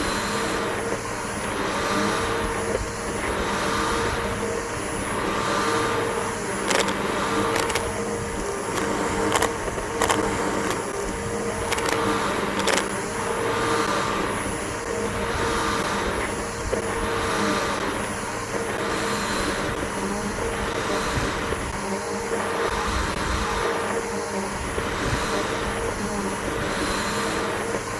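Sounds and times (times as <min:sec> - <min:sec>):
vacuum cleaner running: 0:00.0 - 0:27.9
sharp clicks: 0:06.6 - 0:13.0.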